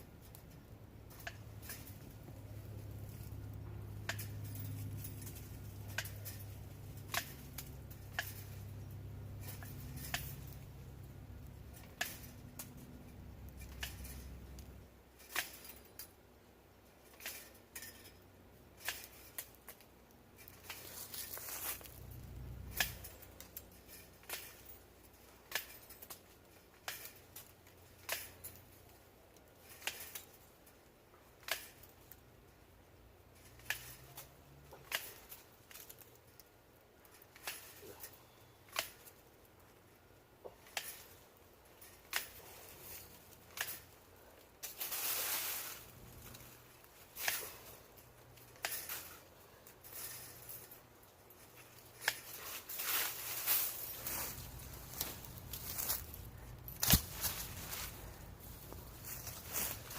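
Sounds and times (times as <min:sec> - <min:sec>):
low hum: 0:00.0 - 0:16.1
hand tool snipping wire: 0:01.1 - 0:16.1, 0:18.8 - 0:24.8, 0:25.4 - 0:28.7, 0:29.3 - 0:30.4, 0:31.4 - 0:32.2, 0:33.4 - 0:36.5, 0:37.1 - 0:39.2, 0:40.5 - 0:41.2, 0:41.8 - 0:44.0, 0:48.3 - 0:50.8, 0:51.4 - 0:52.8, 0:53.6 - 0:58.2.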